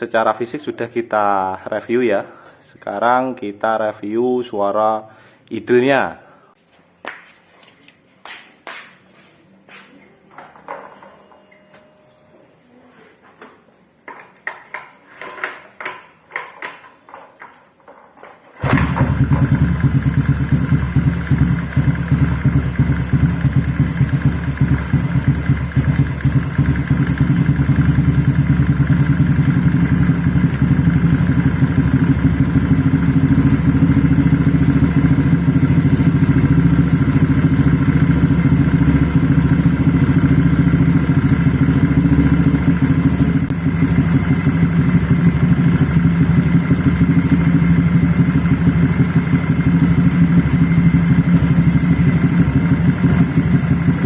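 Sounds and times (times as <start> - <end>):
scooter engine idling: 18.6 - 54.0.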